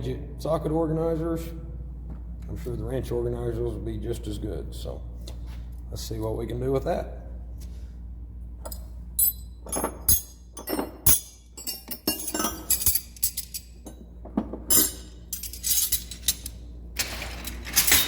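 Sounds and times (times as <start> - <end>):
steel wrenches clinking: 8.7 - 14.1, 14.7 - 18.0.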